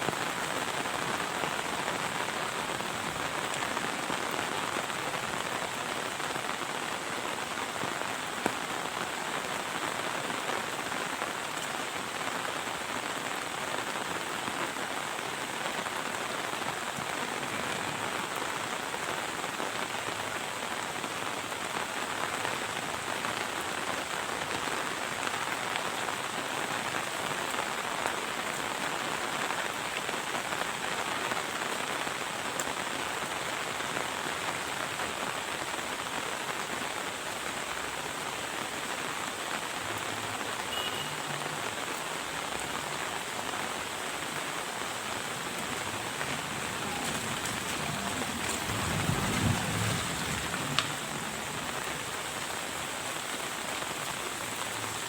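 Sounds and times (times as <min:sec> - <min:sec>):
heavy rain falling: 0:00.0 - 0:55.0.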